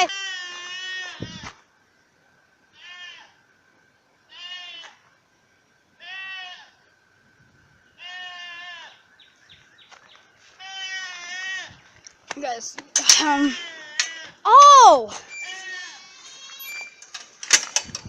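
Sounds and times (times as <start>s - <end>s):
goat bleating: 0.0s - 1.6s, 2.8s - 3.4s, 4.3s - 5.0s, 6.0s - 6.8s, 8.0s - 9.0s, 10.5s - 11.8s, 13.2s - 14.4s, 15.4s - 16.6s.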